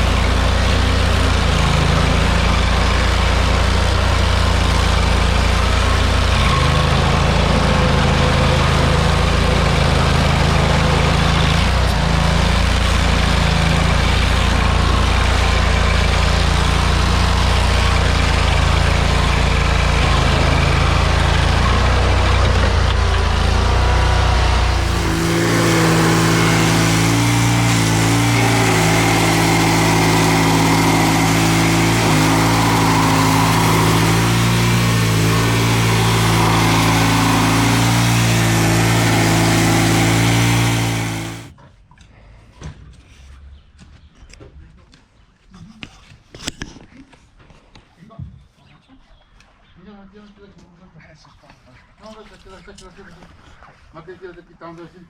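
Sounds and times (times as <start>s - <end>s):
stump grinder engine running: 0.0s - 41.5s.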